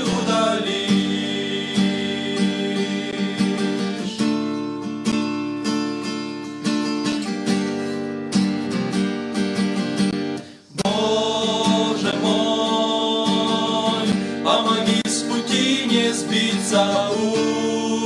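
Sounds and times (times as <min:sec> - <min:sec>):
strummed acoustic guitar: 0:00.0 - 0:18.0.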